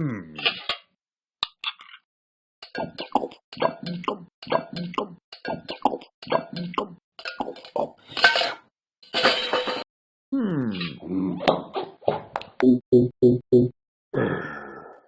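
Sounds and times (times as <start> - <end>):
person gulping juice: 2.6 - 8.0.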